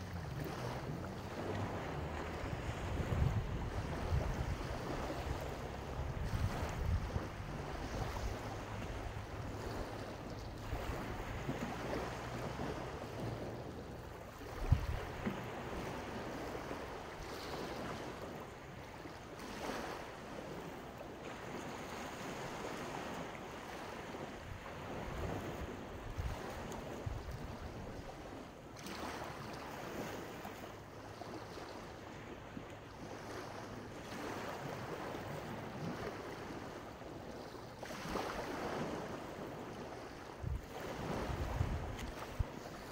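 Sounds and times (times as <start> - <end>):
wind buffeting microphone: 0.0 - 18.5, 23.7 - 28.3, 37.4 - 42.9
sea waves washing onto beach: 0.0 - 42.9.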